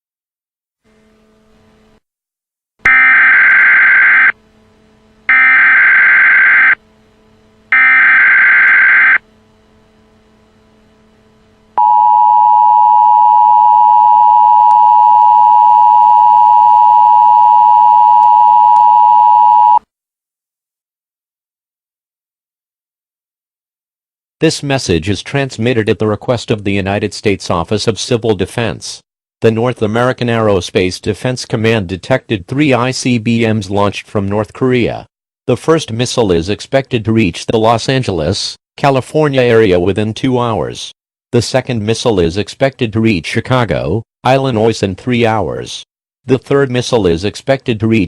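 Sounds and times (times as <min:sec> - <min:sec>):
two-tone alert signal: 0:02.9 - 0:04.3, 0:05.3 - 0:06.8, 0:07.7 - 0:09.2
faint low hum: 0:09.1 - 0:19.7.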